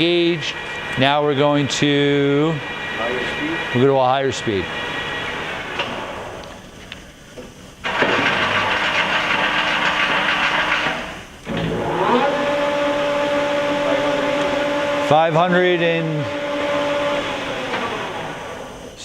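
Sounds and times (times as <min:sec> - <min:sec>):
lathe running: 0:00.0 - 0:06.9, 0:07.8 - 0:19.0
lathe drive whine and hum: 0:00.0 - 0:19.0
hissing whir: 0:10.4 - 0:19.0.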